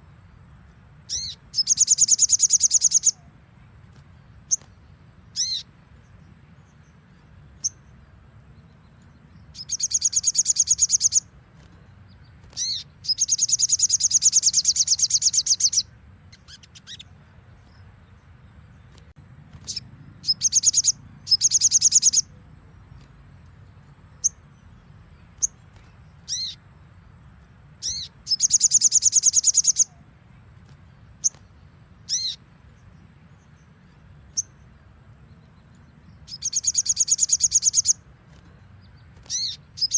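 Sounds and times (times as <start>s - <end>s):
bird singing rapid high trills: 0.0s - 39.9s
bird down-swept calls: 1.1s - 3.3s, 12.5s - 17.1s, 19.6s - 22.4s, 27.8s - 30.1s, 36.3s - 38.0s.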